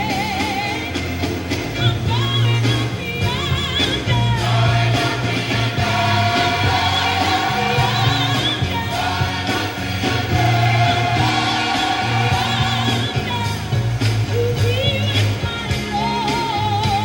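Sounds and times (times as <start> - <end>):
steady bass line: 0.0 - 17.0.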